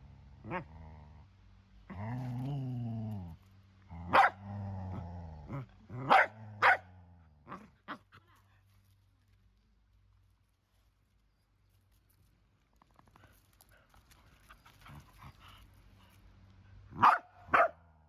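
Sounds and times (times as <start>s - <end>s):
dog growling: 1.9s - 6.6s
dog barking: 4.1s - 4.4s, 6.0s - 6.9s, 17.0s - 17.8s.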